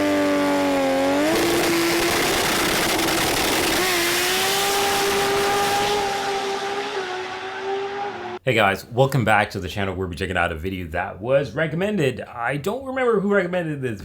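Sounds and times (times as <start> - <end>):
racing car engine revving: 0.0 - 8.4.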